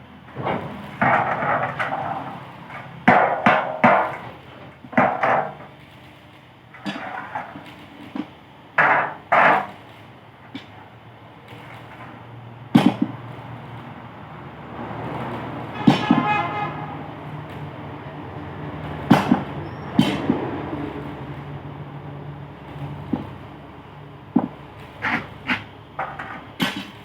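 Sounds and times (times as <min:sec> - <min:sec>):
hammer striking metal: 0:19.1 - 0:20.5.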